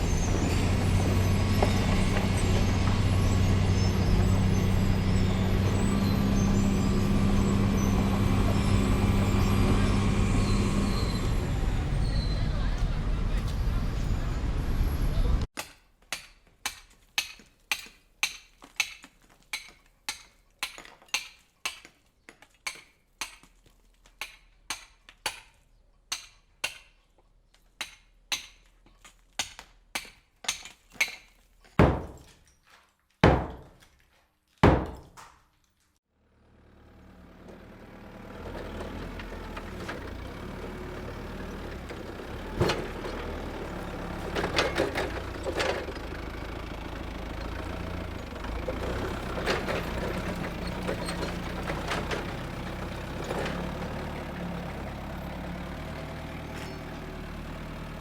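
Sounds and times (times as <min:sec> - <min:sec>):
construction machinery engine: 0:00.0 - 0:15.5, 0:36.2 - 0:58.0
hammering: 0:15.6 - 0:22.0, 0:29.4 - 0:32.4, 0:33.2 - 0:33.8, 0:34.6 - 0:35.3.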